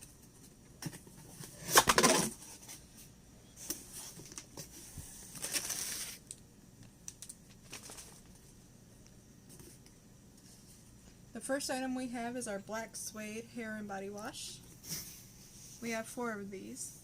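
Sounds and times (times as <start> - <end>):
packaging rustling and crinkling: 3.6 - 6.4, 7.1 - 8.6.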